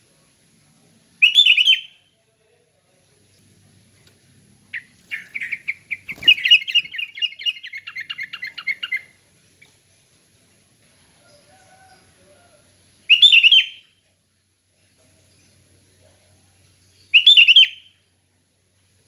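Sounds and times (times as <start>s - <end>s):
bulbul singing: 1.2s - 2.1s, 3.3s - 9.8s, 13.0s - 14.0s, 16.8s - 18.0s.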